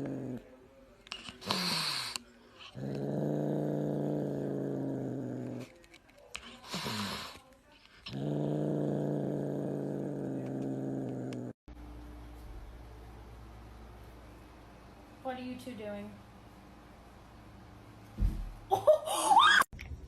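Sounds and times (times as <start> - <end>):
animal growling: 0.0 - 0.5, 1.4 - 5.8, 8.0 - 11.6.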